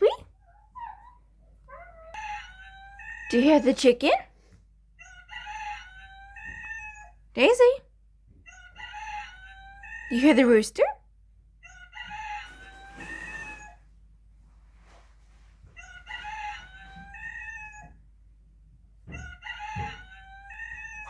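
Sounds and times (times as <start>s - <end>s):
rooster crowing: 2.0s - 3.6s, 5.0s - 7.1s, 8.5s - 10.2s, 11.6s - 13.8s, 15.8s - 18.0s, 19.1s - 21.0s.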